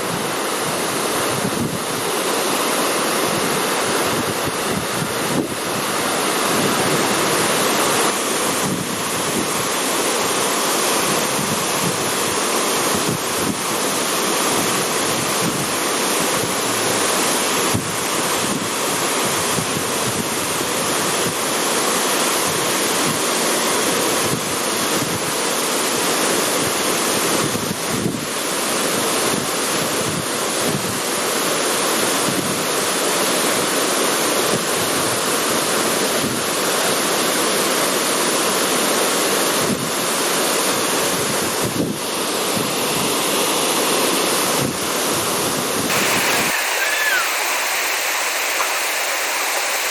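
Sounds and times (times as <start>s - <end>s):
waterfall rushing: 0.0s - 27.3s, 42.0s - 49.9s.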